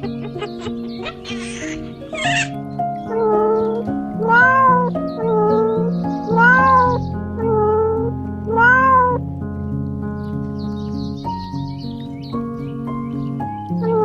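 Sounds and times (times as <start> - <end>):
background music: 0.0 - 14.0
cat meowing: 1.0 - 2.6, 4.2 - 4.9, 6.3 - 7.0, 8.5 - 9.2.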